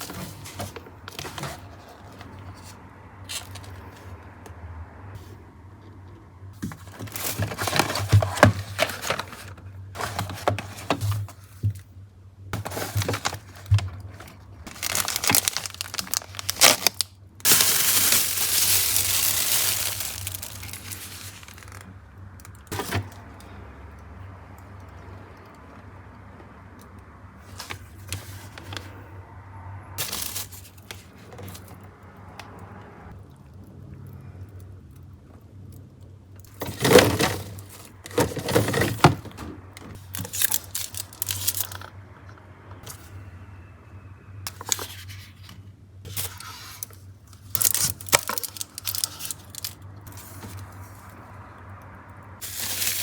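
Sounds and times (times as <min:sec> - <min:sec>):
plastic packaging crinkling: 0:06.7 - 0:11.7, 0:12.6 - 0:21.9, 0:30.0 - 0:31.6, 0:36.5 - 0:41.9, 0:46.2 - 0:49.8, 0:52.4 - 0:53.0.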